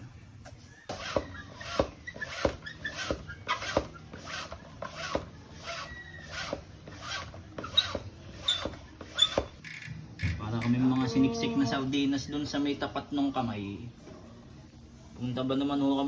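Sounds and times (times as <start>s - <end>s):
bicycle pump strokes: 0.9s - 10.8s.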